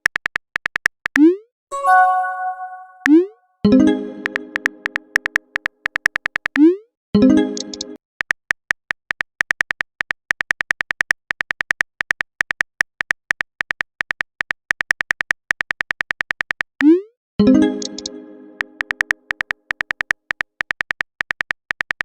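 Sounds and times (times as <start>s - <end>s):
phone keyboard typing clicks: 4.2s - 6.7s, 17.7s - 22.0s.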